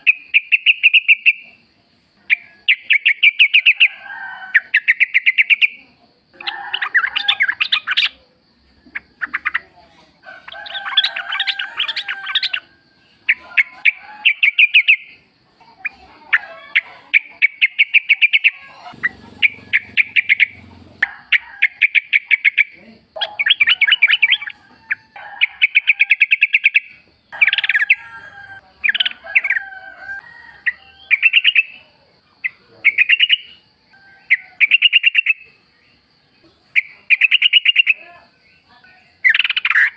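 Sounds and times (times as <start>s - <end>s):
bird chattering song: 0.0s - 1.6s, 2.3s - 4.0s, 4.7s - 8.2s, 8.8s - 9.8s, 10.4s - 24.6s, 25.4s - 29.6s, 30.6s - 39.9s.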